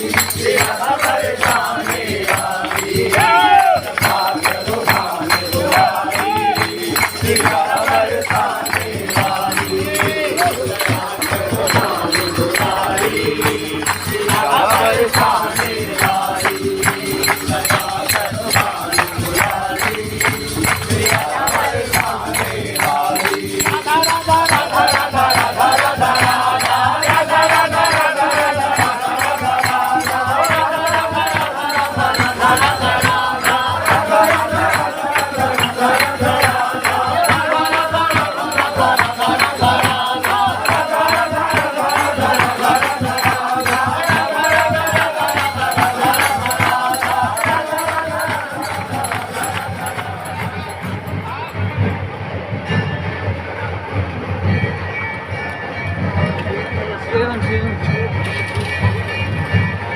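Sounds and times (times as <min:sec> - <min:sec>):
shehnai melody: 0:00.0 - 0:51.0
dhol drumming: 0:00.0 - 0:59.9.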